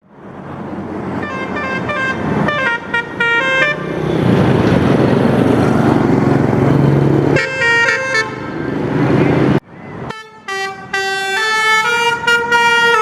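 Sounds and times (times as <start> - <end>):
loud vehicle noise: 0.0 - 13.0
musical air horn tune: 10.1 - 13.0.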